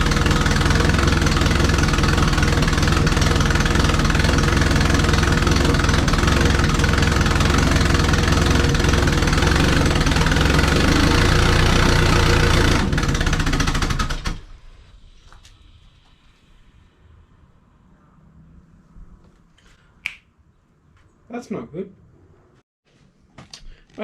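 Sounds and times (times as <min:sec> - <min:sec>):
engine stumbling and stalling: 0:00.0 - 0:16.3
engine rough idle: 0:00.0 - 0:16.9.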